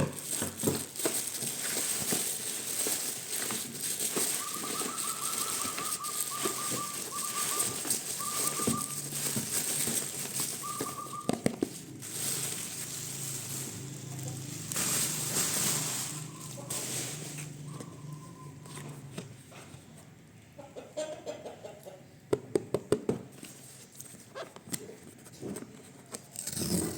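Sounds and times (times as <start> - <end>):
packaging clicks: 0.2 - 16.6
bird trilling: 4.2 - 9.3, 10.4 - 11.4.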